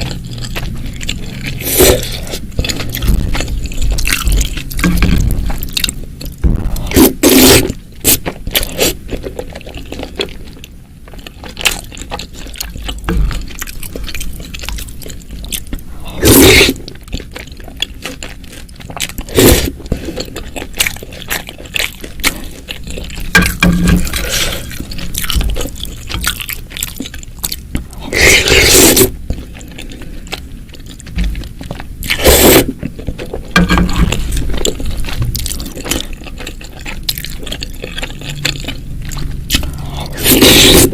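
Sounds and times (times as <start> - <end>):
chewing clicks and squishes: 0.0 - 6.4, 8.1 - 15.9, 16.7 - 28.4, 29.0 - 40.7
slurping noodles and broth: 1.4 - 2.4, 6.7 - 9.0, 16.1 - 16.8, 19.3 - 20.4, 28.1 - 29.1, 32.1 - 32.8, 39.7 - 40.9.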